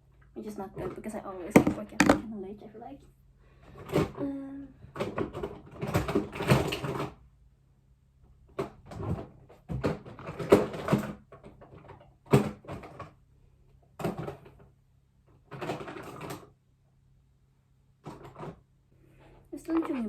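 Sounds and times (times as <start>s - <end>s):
knocking and clattering: 1.5s - 2.3s.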